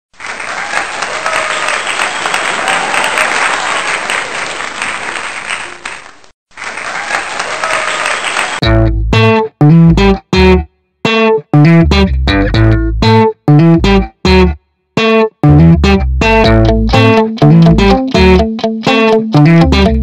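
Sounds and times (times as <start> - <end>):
crowd applauding and cheering: 0.1 - 8.6.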